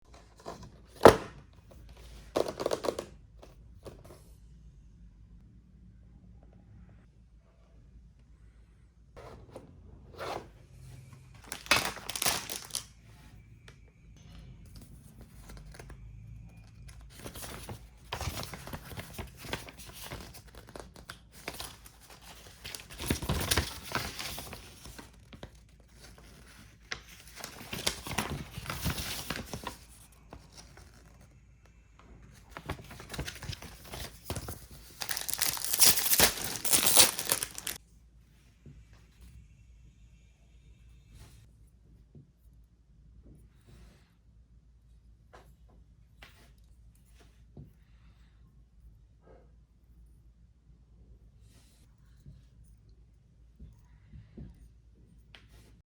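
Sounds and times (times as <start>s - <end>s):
plastic packaging crinkling and tearing: 11.4s - 12.9s, 17.1s - 31.1s, 32.6s - 37.8s.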